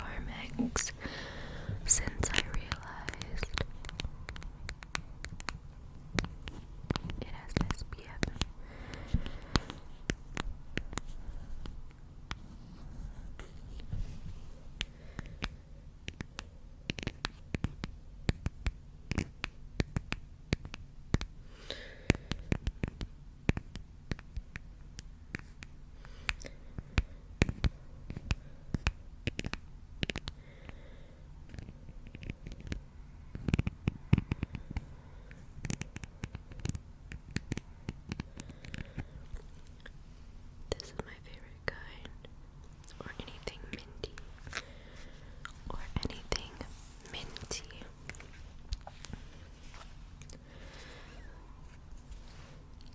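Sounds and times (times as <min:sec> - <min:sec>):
low rumble of handling noise: 0:00.0 - 0:16.6, 0:31.4 - 0:52.9
scratching and tapping on microphone: 0:01.6 - 0:12.5, 0:13.3 - 0:21.3, 0:25.3 - 0:30.8, 0:31.5 - 0:39.8.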